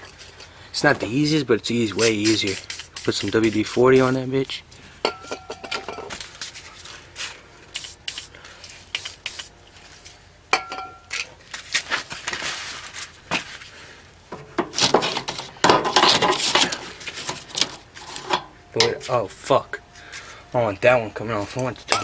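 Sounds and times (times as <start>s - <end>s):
tools clanking on metal pipe: 5.0s - 6.2s, 14.4s - 19.1s.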